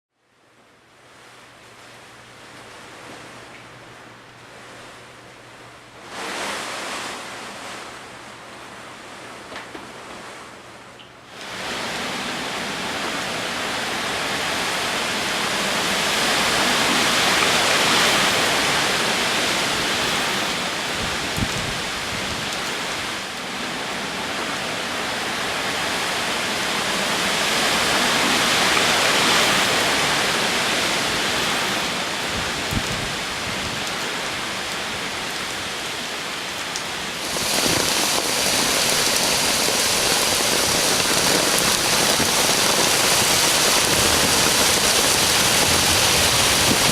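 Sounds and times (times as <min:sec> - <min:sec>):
heavy rain downpour: 0:00.2 - 0:46.9
gusting wind: 0:01.1 - 0:10.8, 0:11.4 - 0:46.9.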